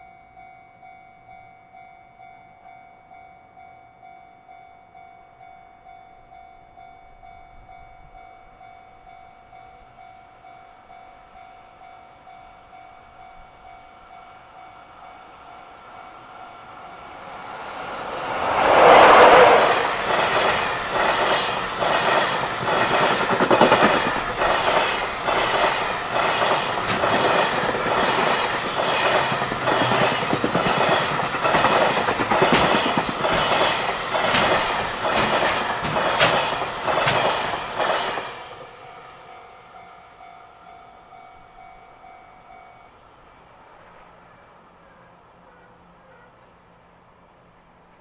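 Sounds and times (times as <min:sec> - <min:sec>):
locomotive passing: 0:13.3 - 0:40.2
wagon wheels clacking over rail joints: 0:20.0 - 0:38.4.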